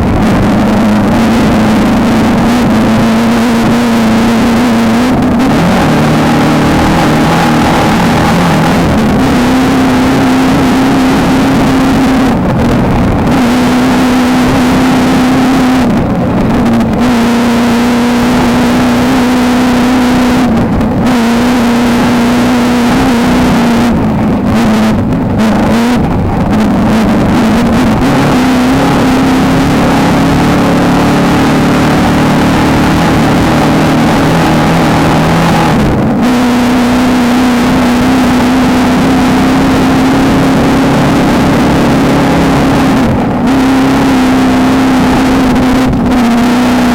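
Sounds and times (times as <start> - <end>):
race car engine revving hard: 0.0 - 46.9.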